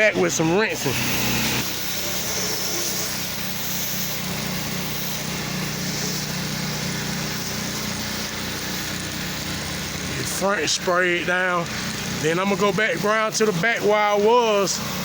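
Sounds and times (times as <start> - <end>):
pressure washer engine running: 0.0 - 15.0
hiss of spraying wand: 0.9 - 10.0.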